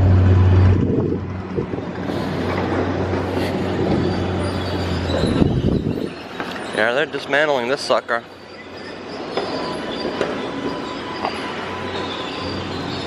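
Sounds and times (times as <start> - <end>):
heavy machine low hum: 0.0 - 6.2
faint high-pitched squealing: 2.0 - 13.0.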